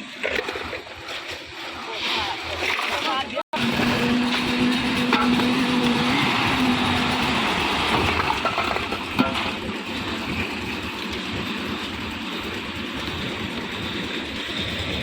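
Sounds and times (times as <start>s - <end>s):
concrete mixer running: 1.5s - 15.0s.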